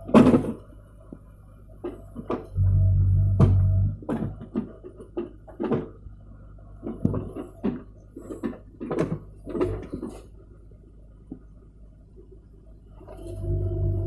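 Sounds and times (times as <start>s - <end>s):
backhoe engine running low: 0.0s - 14.0s
irregular knocks and clunks: 3.3s - 6.0s, 6.8s - 10.3s.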